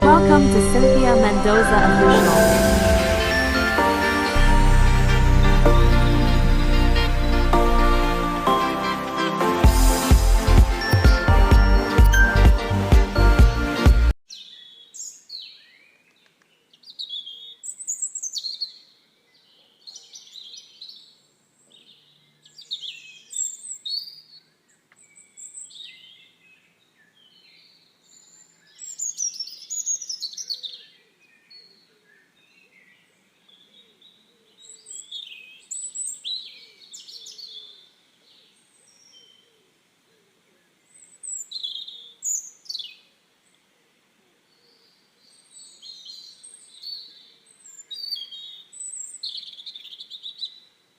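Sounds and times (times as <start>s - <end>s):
songbirds chirping and whistling: 14.3s - 39.5s, 40.8s - 43.0s, 44.5s - 50.7s.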